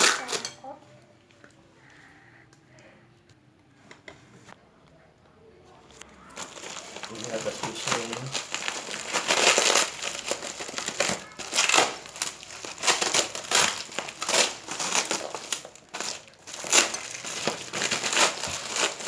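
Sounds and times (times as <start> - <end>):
packaging crumpled and rustling: 5.9 - 19.0.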